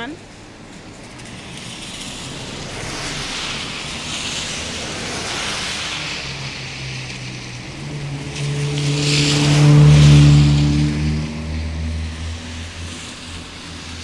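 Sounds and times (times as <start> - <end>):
rushing floodwater: 0.0 - 14.0
vehicle engine passing: 0.7 - 14.0.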